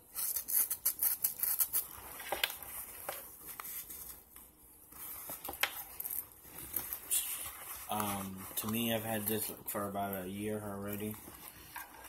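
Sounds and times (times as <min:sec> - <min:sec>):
velcro tearing open: 0:00.1 - 0:02.0.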